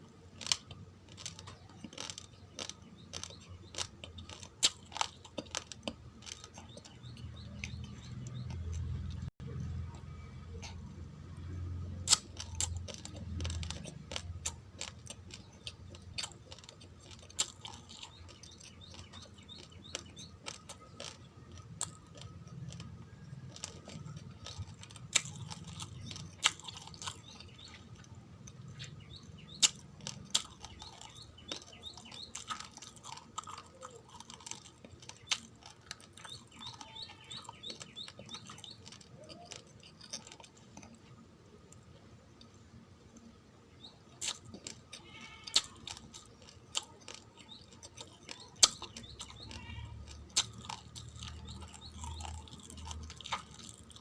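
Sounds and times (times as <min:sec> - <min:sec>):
chewing crunchy rice grains: 0:00.0 - 0:54.0.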